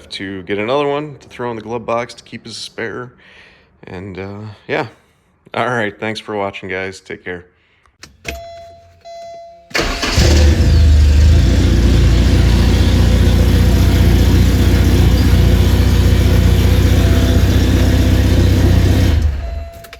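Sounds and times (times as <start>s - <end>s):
car engine running loudly: 9.8s - 19.6s.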